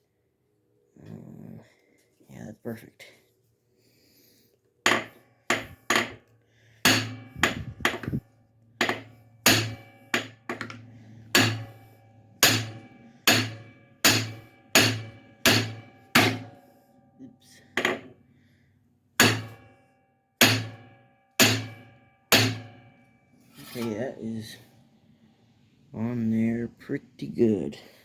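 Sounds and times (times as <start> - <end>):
hammer striking metal: 4.9 - 6.2, 6.8 - 8.2, 8.8 - 16.7, 17.8 - 18.1, 19.2 - 19.8, 20.4 - 23.0.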